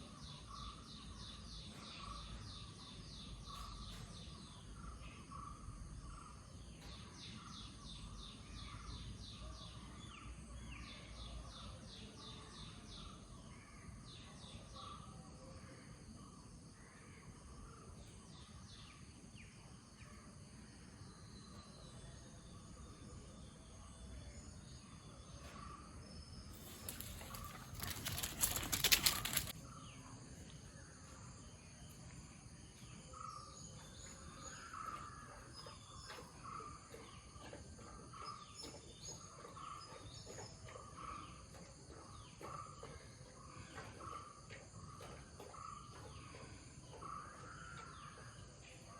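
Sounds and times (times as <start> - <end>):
high insect hum: 26.1 - 33.7
birds chirping: 26.2 - 29.7.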